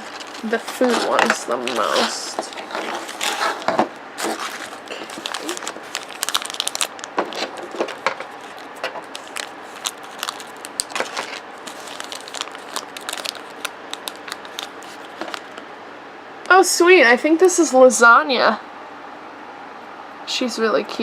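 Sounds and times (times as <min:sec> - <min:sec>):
plastic packaging torn open: 0:00.0 - 0:15.6.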